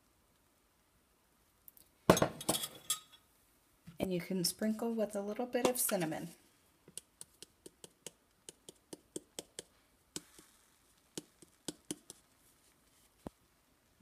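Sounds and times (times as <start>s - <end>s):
taps on a spice shaker: 6.9s - 10.5s, 11.2s - 12.2s.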